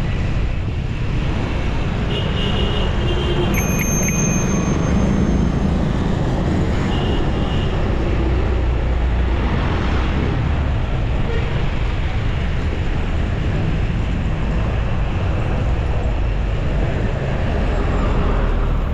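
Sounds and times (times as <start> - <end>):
road and traffic noise: 0.0 - 18.9
brief high-pitched tones: 3.6 - 5.4.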